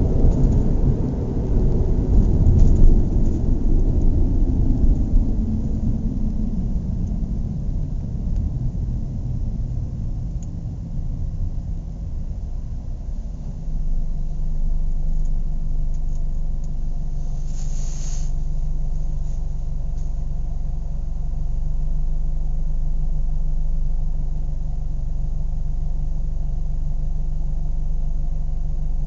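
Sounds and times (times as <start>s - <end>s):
car engine idling: 0.0s - 29.0s
short hiss: 17.2s - 18.5s.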